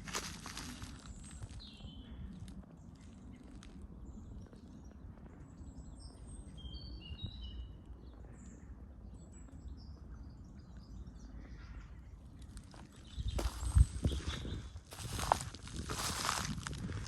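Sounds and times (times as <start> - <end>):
small birds chirping: 0.0 - 17.0
steady low rumble: 11.9 - 17.0.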